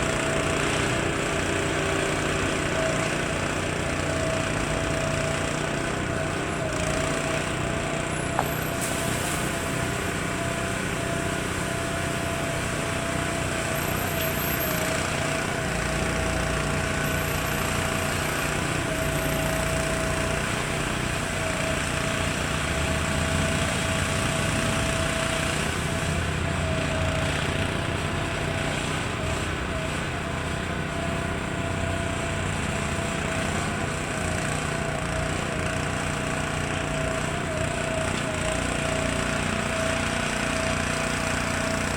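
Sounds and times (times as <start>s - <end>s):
siren motor hum: 0.0s - 41.9s
warning siren steady tone: 0.0s - 41.9s.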